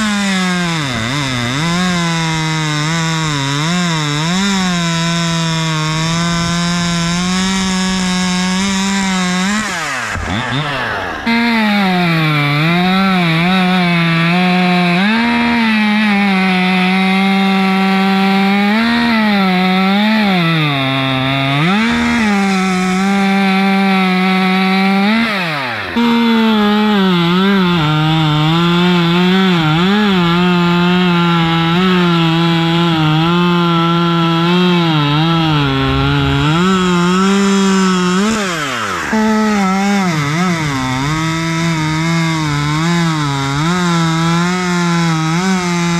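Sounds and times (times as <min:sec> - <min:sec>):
chainsaw cutting wood: 0:00.0 - 0:45.9.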